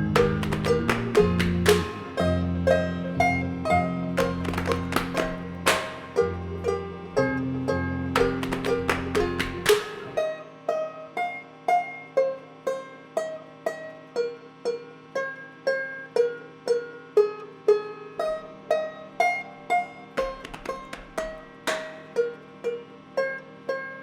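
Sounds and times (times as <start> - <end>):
held low note: 0.0 - 10.4
plucked-string melody: 0.0 - 24.0.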